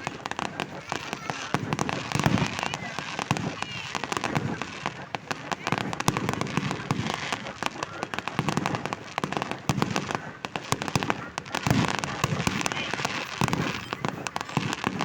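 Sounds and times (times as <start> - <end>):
fireworks crackling pops: 0.0 - 15.0
fireworks deep booms: 0.0 - 15.0.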